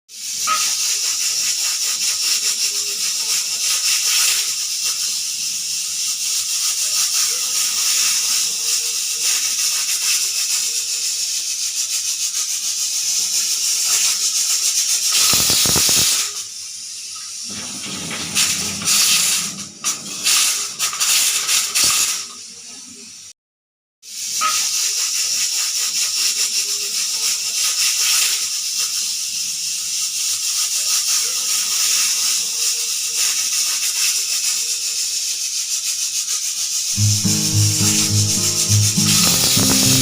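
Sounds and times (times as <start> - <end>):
pressure cooker whistle hissing: 0.1 - 17.5, 24.1 - 30.1.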